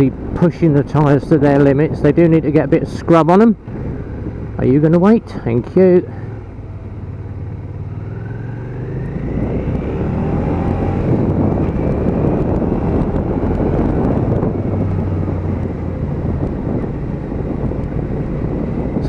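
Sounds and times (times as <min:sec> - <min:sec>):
motorcycle engine pulling away: 0:06.2 - 0:18.8.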